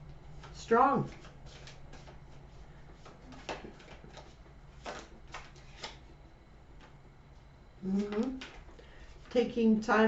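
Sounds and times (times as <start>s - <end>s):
low room hum: 0.0s - 10.0s
cards clicking and swishing: 3.0s - 6.1s.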